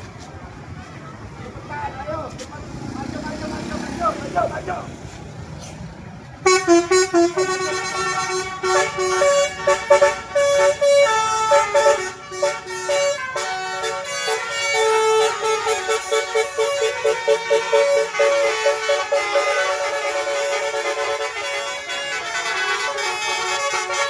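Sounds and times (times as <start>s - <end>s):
multi-tone bus horn melody: 6.4s - 24.0s.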